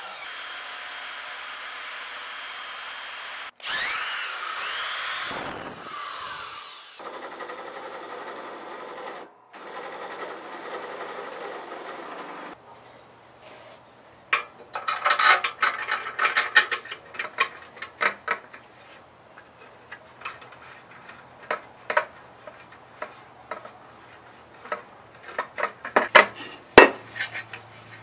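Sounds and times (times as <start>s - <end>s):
steel parts and tools clinking: 14.3s - 18.7s.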